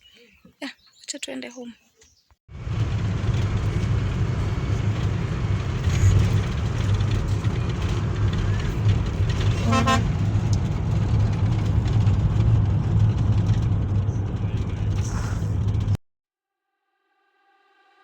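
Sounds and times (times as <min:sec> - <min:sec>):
vehicle engine and road rumble: 0:02.5 - 0:16.0
car horn toot: 0:09.4 - 0:10.2.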